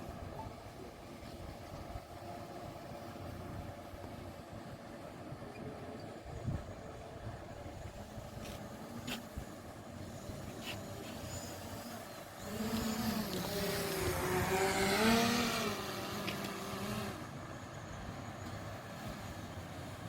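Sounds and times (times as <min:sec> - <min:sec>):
diesel railcar rumbling on track: 0:17.2 - 0:20.0.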